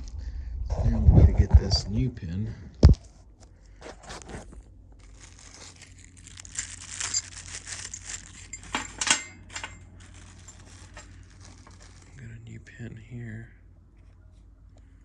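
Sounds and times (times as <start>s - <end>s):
plastic packaging crinkling: 3.9s - 12.4s.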